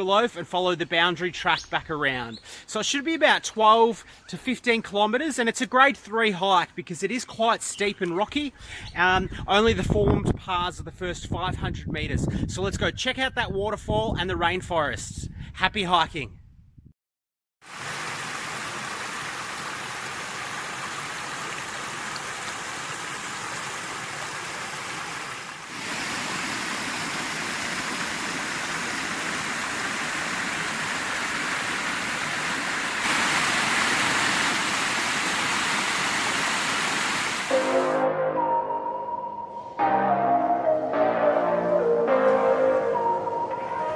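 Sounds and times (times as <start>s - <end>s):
flowing water rushing: 17.7s - 38.0s.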